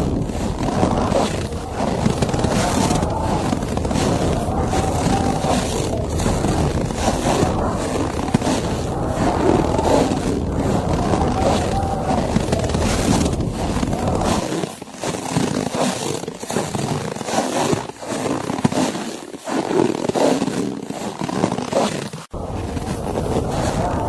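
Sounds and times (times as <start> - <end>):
wind rumble: 0.0 - 14.5, 22.3 - 24.0
footsteps crunching through snow: 0.0 - 24.0.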